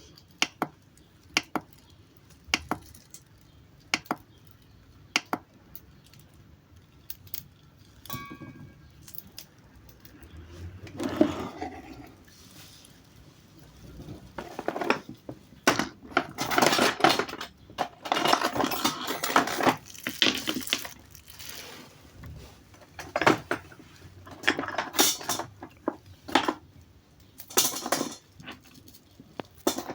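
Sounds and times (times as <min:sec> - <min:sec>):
metallic objects clinking: 0:07.1 - 0:10.3, 0:16.4 - 0:21.6, 0:27.4 - 0:29.9.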